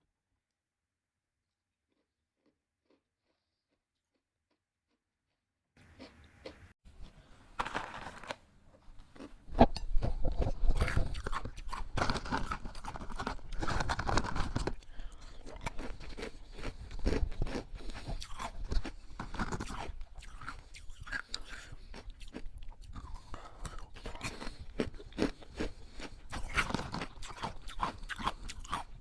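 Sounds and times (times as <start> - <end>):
person crunching ice cubes: 10.5 - 29.0.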